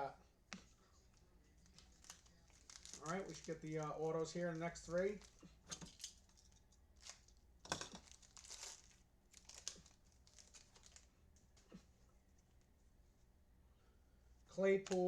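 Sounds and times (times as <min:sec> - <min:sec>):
trading cards rustling by hand: 0:00.5 - 0:13.3, 0:14.6 - 0:15.0.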